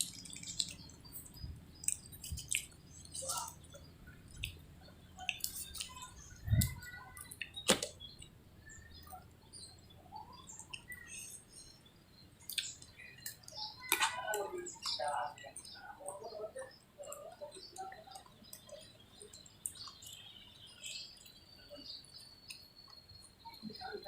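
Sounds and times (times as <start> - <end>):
wet chewing mouth clicks: 0.0 - 4.6.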